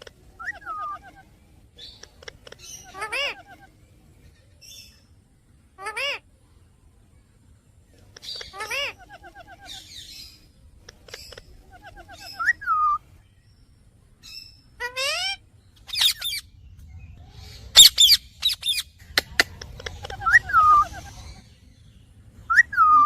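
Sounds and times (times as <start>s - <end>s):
parakeet calling: 0.0s - 3.8s, 5.8s - 6.3s, 8.2s - 13.1s, 14.2s - 21.7s, 22.4s - 23.0s.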